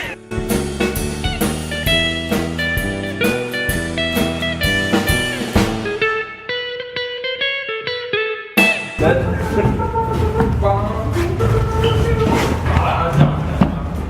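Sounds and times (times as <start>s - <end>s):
drum kit beat: 0.0s - 6.0s, 8.6s - 13.0s
guitar-led band music: 0.0s - 13.0s.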